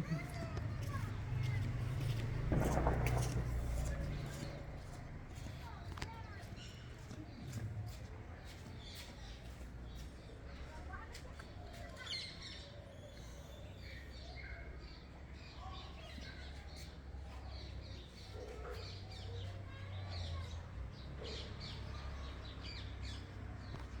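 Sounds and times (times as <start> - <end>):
small birds chirping: 0.0 - 24.0
steady low rumble: 1.8 - 5.0.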